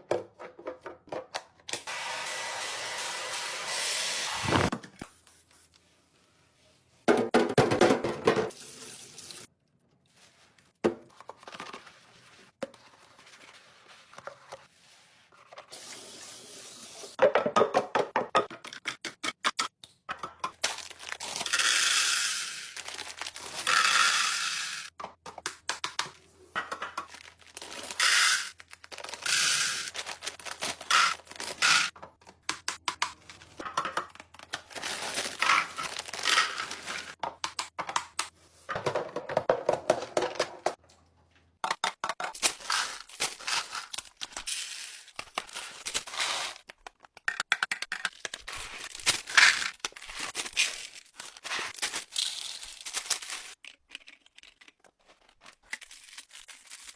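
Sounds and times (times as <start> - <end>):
plastic packaging rustling and tearing: 4.4 - 4.7, 20.6 - 24.0, 27.0 - 32.0, 34.2 - 37.2, 42.4 - 47.1, 47.9 - 56.9
items clicking and tapping: 24.9 - 50.4, 52.9 - 55.9.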